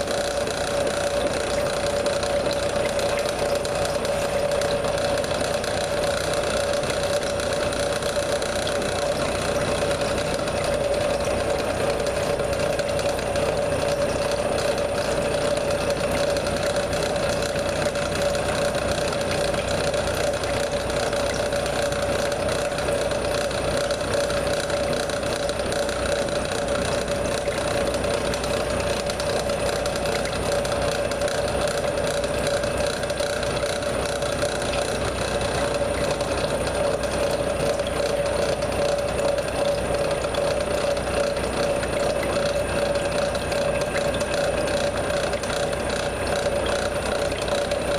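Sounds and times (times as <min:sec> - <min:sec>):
milling machine whine: 0:00.0 - 0:47.9.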